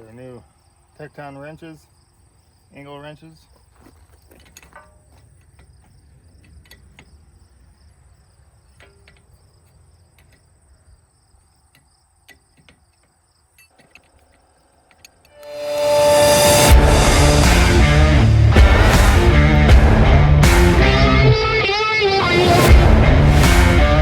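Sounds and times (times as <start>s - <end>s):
cricket trill: 0.0s - 15.4s
music: 15.4s - 24.0s.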